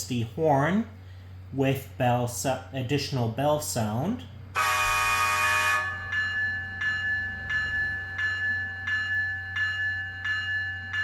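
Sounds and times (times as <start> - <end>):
locomotive horn: 4.5 - 6.2
locomotive bell ringing: 4.6 - 11.0.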